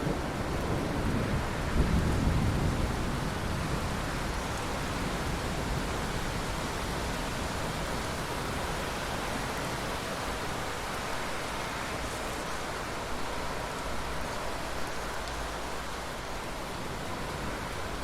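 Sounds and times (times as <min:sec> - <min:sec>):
low thunder rumble: 0:00.1 - 0:07.8.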